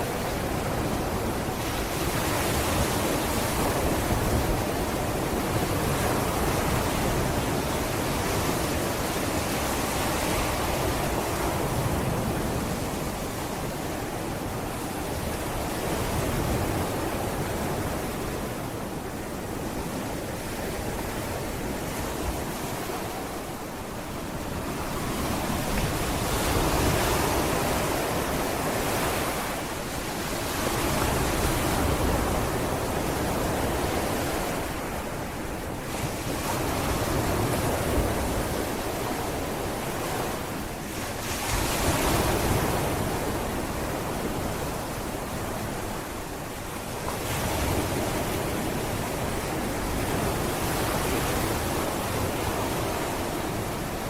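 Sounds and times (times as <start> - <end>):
sea waves breaking on beach: 0.0 - 54.0.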